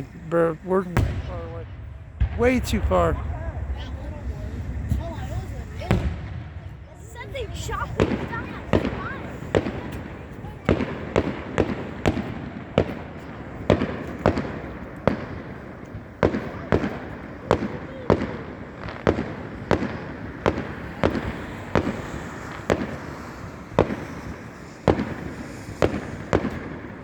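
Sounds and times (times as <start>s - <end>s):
continuous rumble: 0.0s - 27.0s
distant fireworks bangs: 0.0s - 27.0s.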